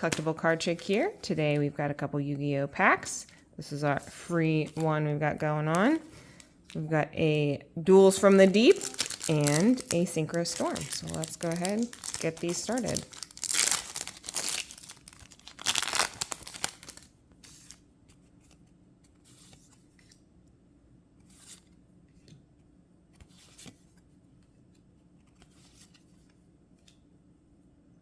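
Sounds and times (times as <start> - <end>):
cards rustling: 0.0 - 1.4, 8.1 - 20.2, 23.2 - 27.0
foil wrapper tearing and crinkling: 8.6 - 17.8.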